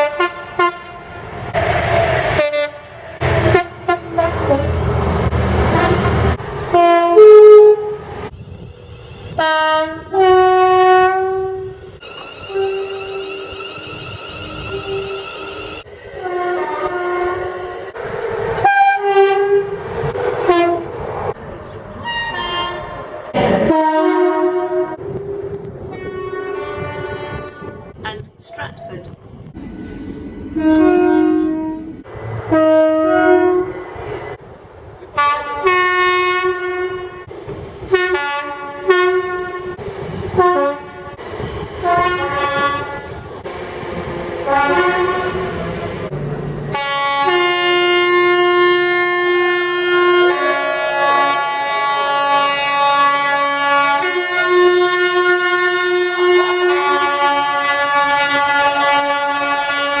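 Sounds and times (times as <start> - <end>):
train horn blasts: 0.0 - 1.2, 2.4 - 4.9, 5.7 - 17.9, 18.6 - 19.8, 20.4 - 20.9, 22.0 - 25.3, 25.9 - 28.0, 30.5 - 33.8, 35.1 - 37.3, 37.9 - 41.2, 41.8 - 43.2, 44.4 - 45.7, 46.7 - 60.0.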